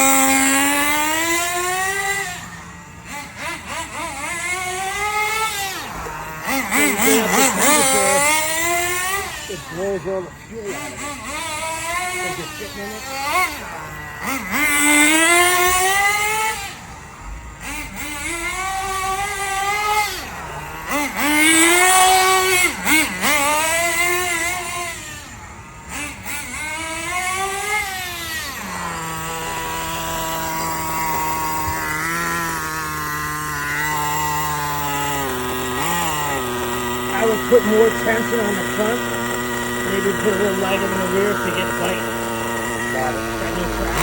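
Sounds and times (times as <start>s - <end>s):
rc car nitro engine revving: 0.0s - 44.0s.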